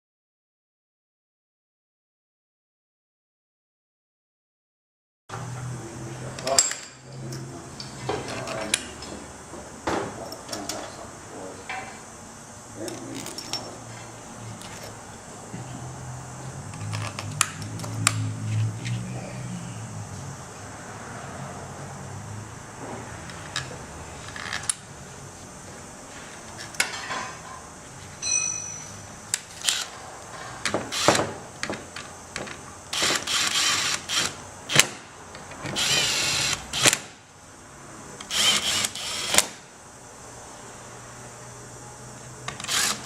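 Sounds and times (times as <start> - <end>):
handheld power tool bursts: 29.4 - 30.0, 30.7 - 31.3, 32.9 - 35.0, 35.8 - 37.1, 38.2 - 39.6, 42.5 - 43.0.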